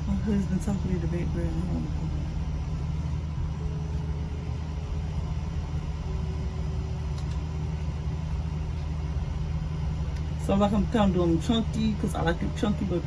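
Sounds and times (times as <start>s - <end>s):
air conditioner humming: 0.0s - 13.0s.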